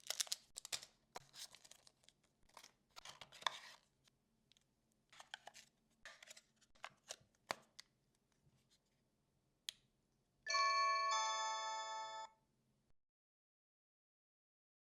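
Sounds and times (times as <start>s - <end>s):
packaging rustling: 0.0s - 3.8s
two-note doorbell chime: 10.5s - 12.3s.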